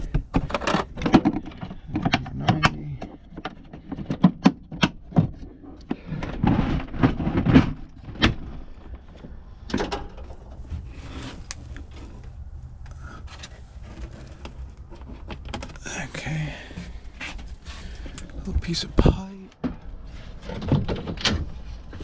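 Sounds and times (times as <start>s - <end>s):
plastic pipe fittings clattering: 0.0s - 15.9s
steady low hum: 5.0s - 22.0s
scraping: 5.1s - 19.0s.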